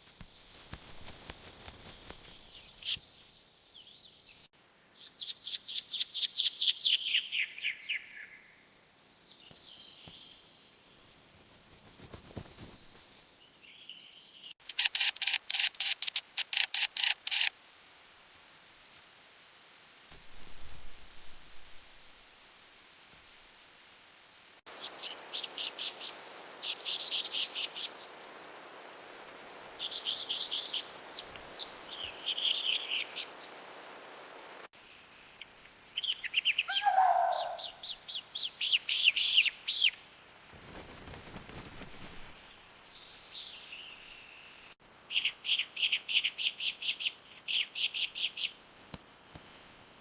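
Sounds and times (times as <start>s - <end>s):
small birds chirping: 0.0s - 17.5s, 24.7s - 28.4s, 29.6s - 33.6s, 36.0s - 42.4s.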